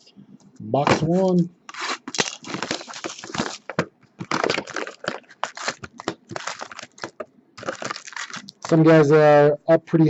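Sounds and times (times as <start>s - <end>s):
wrapping crinkling and tearing: 1.1s - 9.2s.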